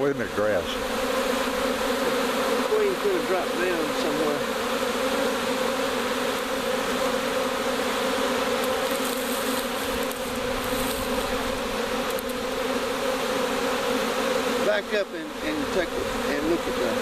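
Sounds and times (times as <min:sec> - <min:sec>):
bee swarm buzzing: 0:00.0 - 0:17.0.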